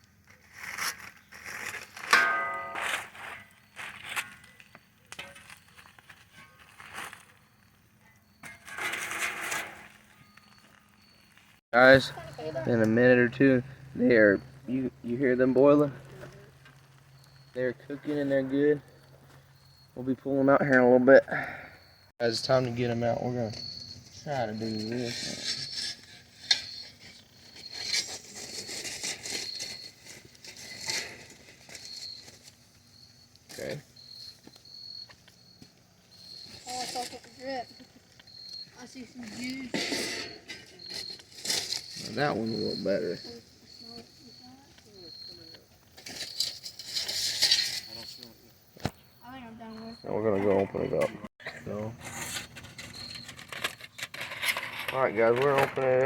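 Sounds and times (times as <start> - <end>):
gritty scraping: 0.0 - 56.0
foil rustling and crinkling: 0.1 - 2.2, 2.8 - 7.6, 24.7 - 34.5, 36.2 - 48.2
campfire crackling: 9.6 - 50.0.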